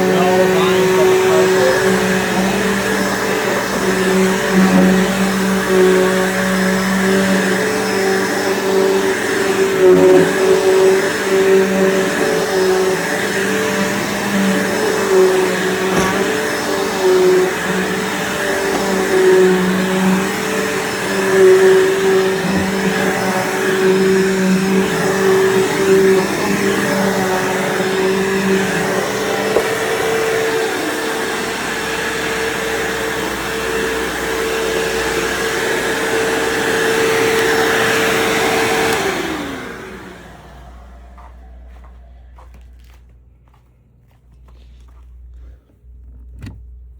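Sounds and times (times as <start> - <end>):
vacuum cleaner running: 0.0 - 46.9.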